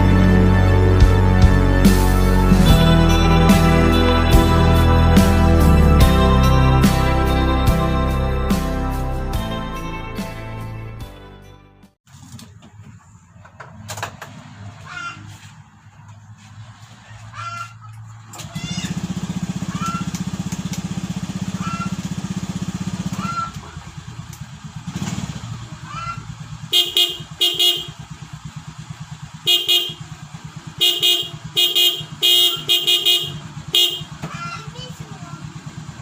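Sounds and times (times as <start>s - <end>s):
scooter engine running: 0.0s - 8.9s, 18.0s - 36.0s
dual-tone horn beeps: 26.7s - 28.1s, 29.4s - 34.2s.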